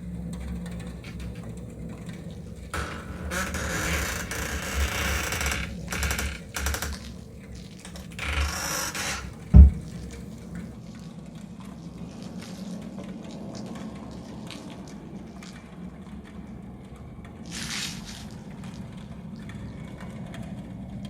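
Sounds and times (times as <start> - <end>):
loud low thump: 9.5 - 10.1
rustling or scraping noises: 11.8 - 15.6, 17.5 - 19.2.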